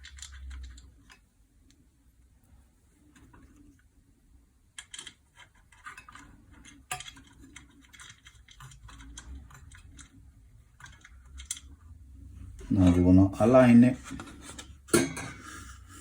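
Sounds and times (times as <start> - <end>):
metal parts clicking and tapping: 4.8 - 11.8.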